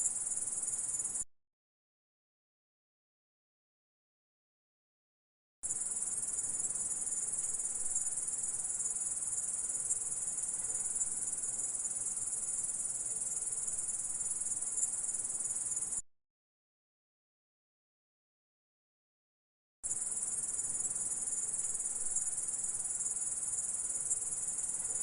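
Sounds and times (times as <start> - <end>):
insect chirring: 0.0 - 1.2, 5.7 - 16.0, 19.9 - 25.0.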